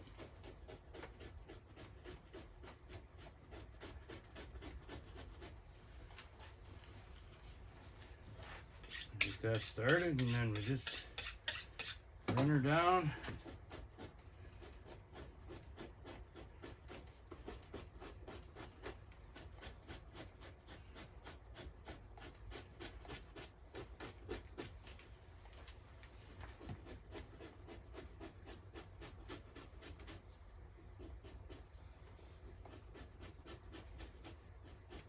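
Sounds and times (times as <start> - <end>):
knife blade scraping hide: 8.4 - 24.7.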